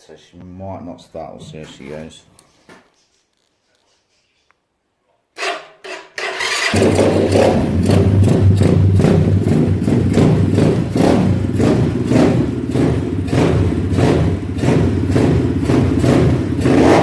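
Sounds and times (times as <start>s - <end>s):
dirt bike engine running: 6.6s - 17.0s.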